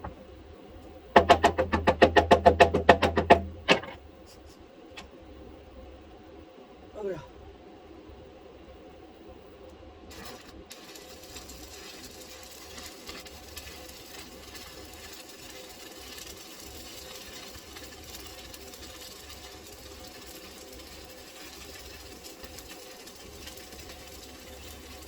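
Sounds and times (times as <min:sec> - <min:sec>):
low steady hum: 0:00.0 - 0:10.1
arc welding crackling: 0:10.0 - 0:25.0.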